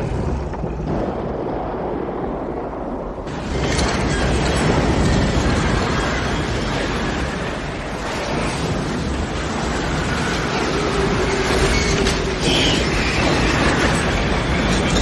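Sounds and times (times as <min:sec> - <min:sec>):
strong wind rumbling: 0:00.0 - 0:15.0.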